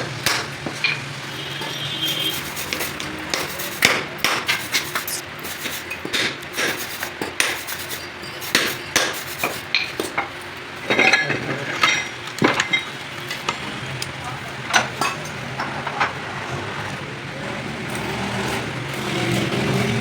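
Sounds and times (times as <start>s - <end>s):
hammer striking metal: 0.0s - 5.3s, 5.9s - 10.3s.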